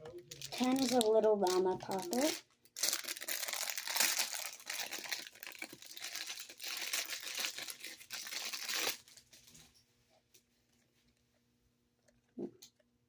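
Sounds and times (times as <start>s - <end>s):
packaging crinkling: 0.3s - 9.6s.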